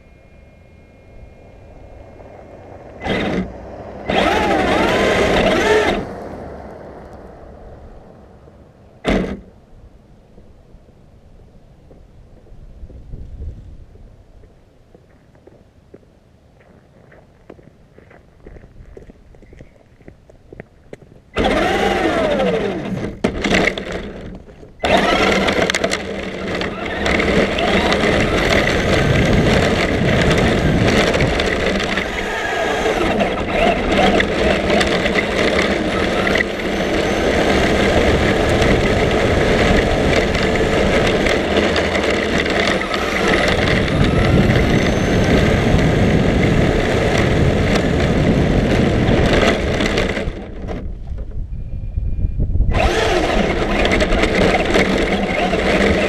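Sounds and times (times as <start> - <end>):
remote-control car motor whine: 0.0 - 6.2, 21.4 - 50.9, 51.5 - 56.0.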